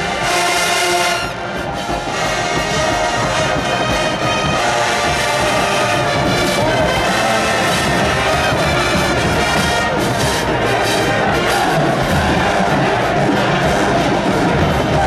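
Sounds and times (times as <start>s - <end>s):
marching band playing: 0.0s - 15.0s.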